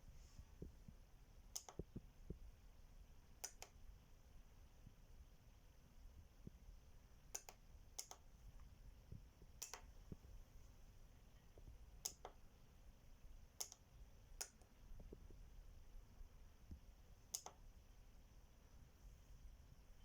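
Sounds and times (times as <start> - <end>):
sharp small clicks: 1.6 - 1.9, 7.3 - 8.2, 9.6 - 9.9, 13.6 - 13.8, 17.3 - 17.6.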